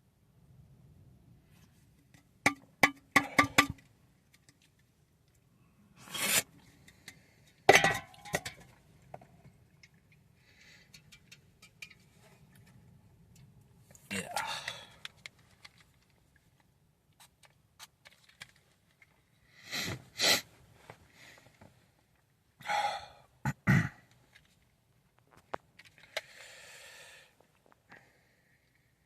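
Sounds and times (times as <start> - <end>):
person breathing and sniffing: 19.5 - 20.5
breathy hiss: 26.2 - 27.4.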